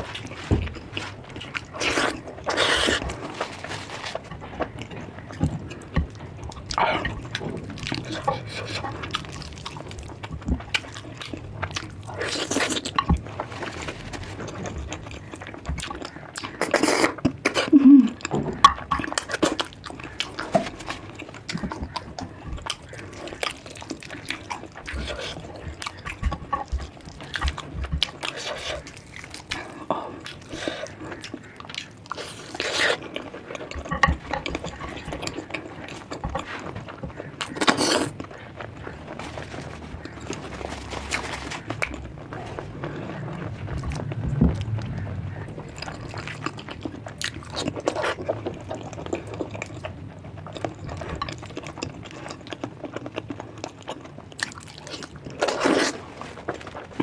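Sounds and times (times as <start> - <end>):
wet chewing: 0.0 - 57.0
slurping: 1.1 - 4.2.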